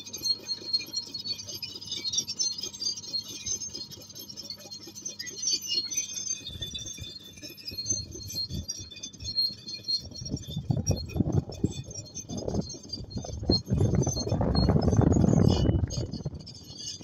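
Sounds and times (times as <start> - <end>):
metallic clinking and squeaking tracks: 0.0 - 17.0.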